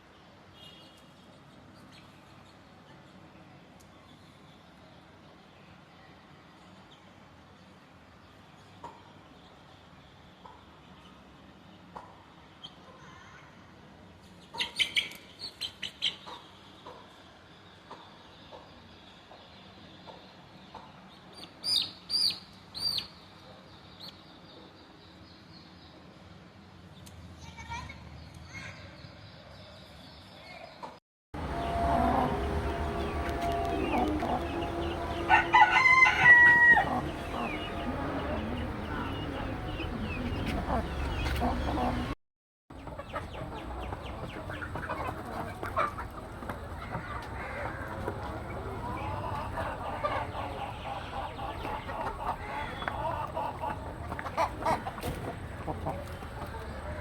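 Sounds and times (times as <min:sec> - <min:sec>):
rooster clucking and calling: 0:31.4 - 0:42.2, 0:46.9 - 0:56.7.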